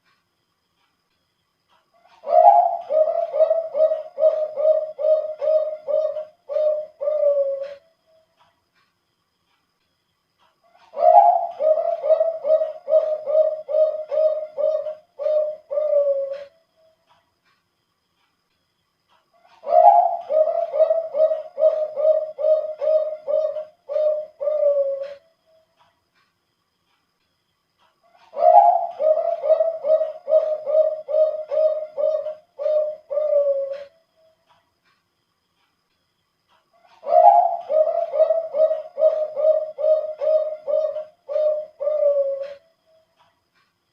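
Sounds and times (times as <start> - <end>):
dove cooing: 2.1 - 7.9, 10.8 - 16.6, 19.4 - 25.3, 28.1 - 34.0, 36.8 - 42.7.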